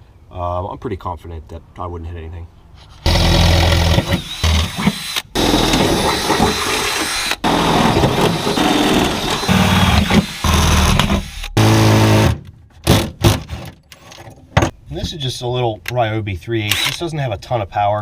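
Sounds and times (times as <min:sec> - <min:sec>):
power drill boring through sheet metal: 0:03.1 - 0:12.3.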